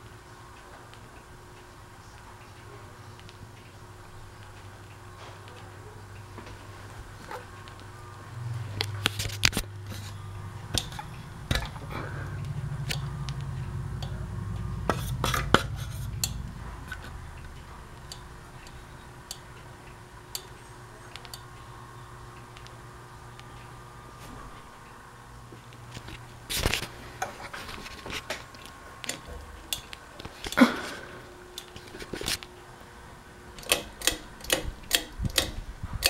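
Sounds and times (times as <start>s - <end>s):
ceiling fan motor humming: 0.0s - 36.0s
deeper hum: 6.9s - 29.7s.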